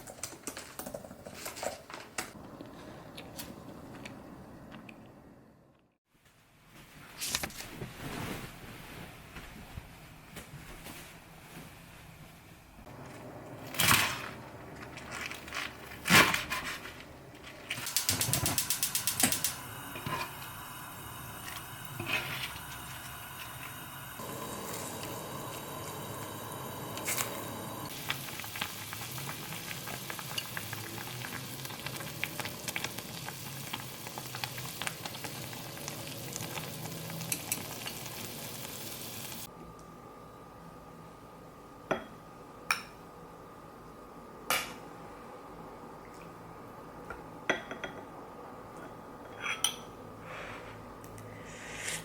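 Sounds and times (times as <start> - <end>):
food sizzling in a pan: 18.0 - 39.5.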